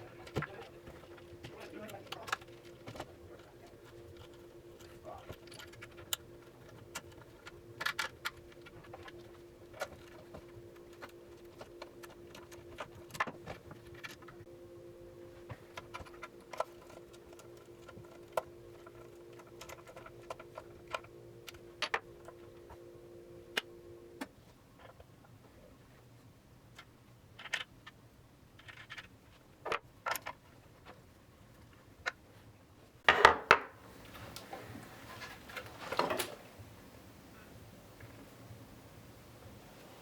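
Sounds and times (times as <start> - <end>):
steady hum: 0.0 - 24.4.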